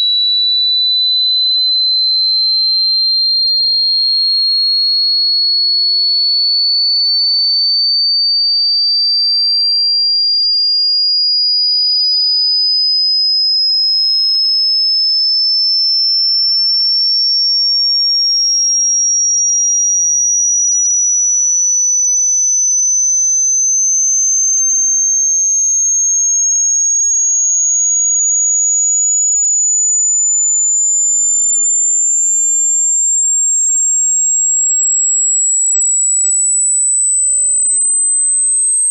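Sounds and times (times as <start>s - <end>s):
rising sine-wave tone: 18.1s - 38.9s.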